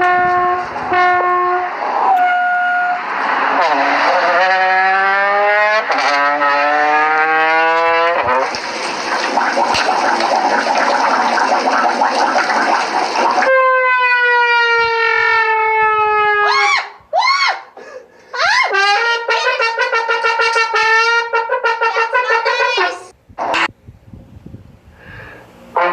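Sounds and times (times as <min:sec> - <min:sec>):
loud noisy rush: 0:00.0 - 0:04.4, 0:08.4 - 0:13.5
horn-like sound effects: 0:00.0 - 0:08.4, 0:13.3 - 0:16.7, 0:18.7 - 0:23.7.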